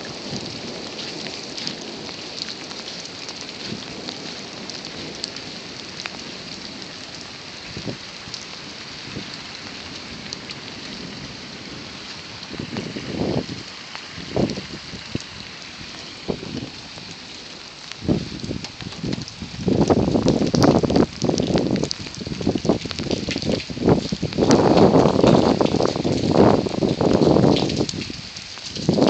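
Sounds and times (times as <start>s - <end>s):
heavy rain: 0.0s - 29.0s.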